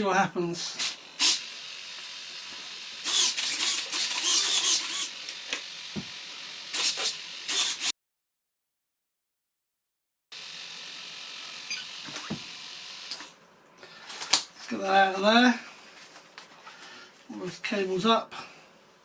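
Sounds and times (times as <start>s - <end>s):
servos whirring and chattering: 0.8s - 7.9s.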